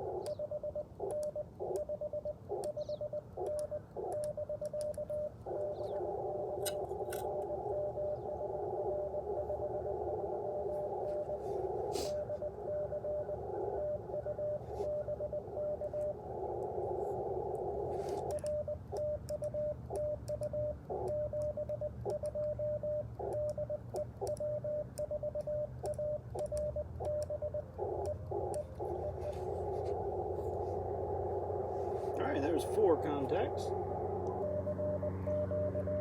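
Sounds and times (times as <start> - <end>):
morse code beeps: 0.0 - 36.0
receiver hiss: 0.0 - 36.0
faint keying clicks: 17.5 - 29.3.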